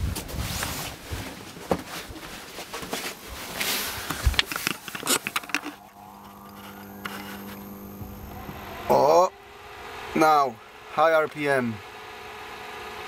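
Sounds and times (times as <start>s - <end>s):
knocks and rustling: 0.0s - 5.8s
steady motor hum: 2.1s - 13.0s.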